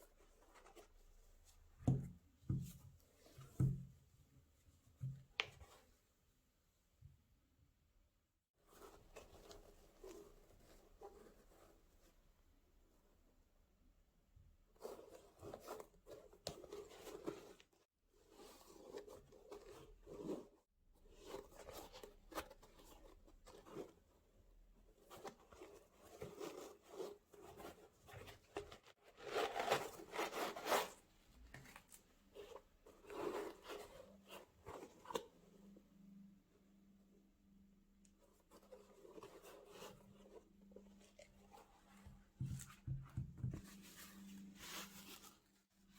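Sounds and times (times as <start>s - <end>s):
paper and cardboard rustling: 24.9s - 35.5s.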